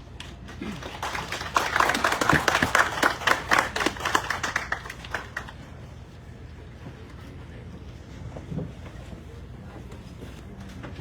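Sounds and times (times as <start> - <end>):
audience applauding: 0.4 - 5.6.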